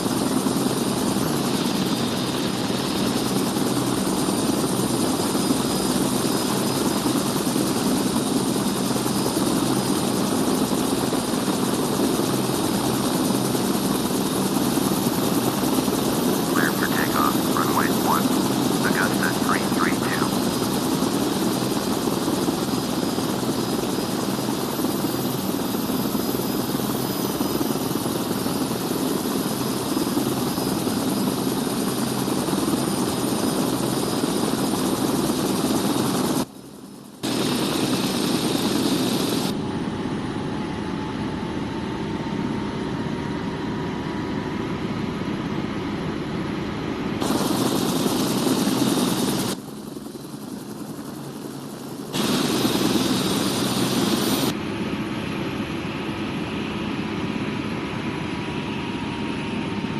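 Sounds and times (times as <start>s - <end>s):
high turbine whine: 0.0s - 32.8s, 47.2s - 59.9s
helicopter rotor running: 0.0s - 59.9s.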